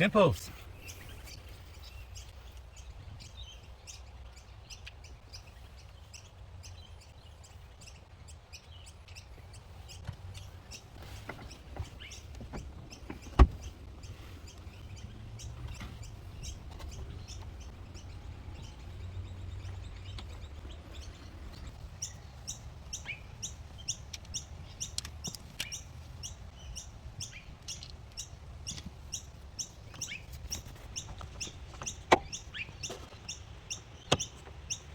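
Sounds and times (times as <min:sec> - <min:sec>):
small birds chirping: 0:00.0 - 0:34.9.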